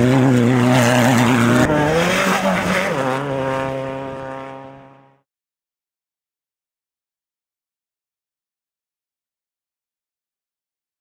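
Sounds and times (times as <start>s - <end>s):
race vehicle engines revving: 0.0s - 5.2s.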